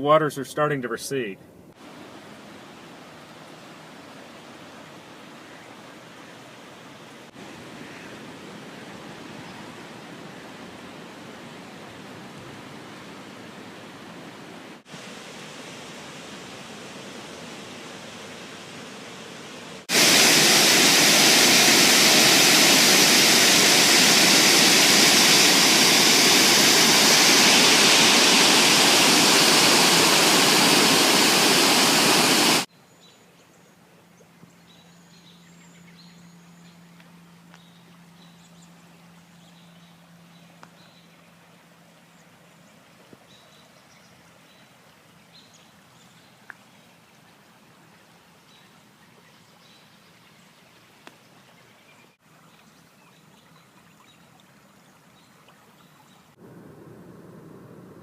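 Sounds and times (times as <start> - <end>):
floodwater rushing: 1.8 - 32.7.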